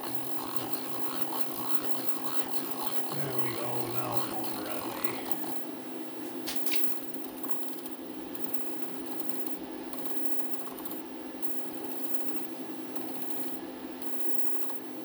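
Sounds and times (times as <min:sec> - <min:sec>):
milling machine motor hum: 0:00.0 - 0:05.7.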